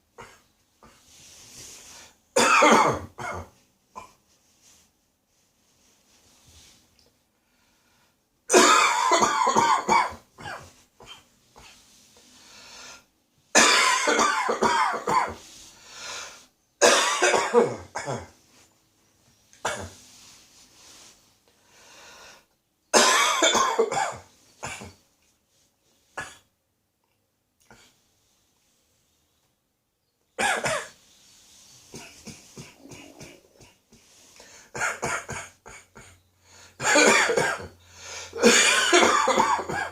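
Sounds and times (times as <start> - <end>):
man coughing: 2.4 - 4.2, 8.5 - 11.2, 13.6 - 15.4, 16.8 - 18.3, 23.0 - 24.9, 32.0 - 33.8, 36.8 - 37.8, 38.4 - 39.9.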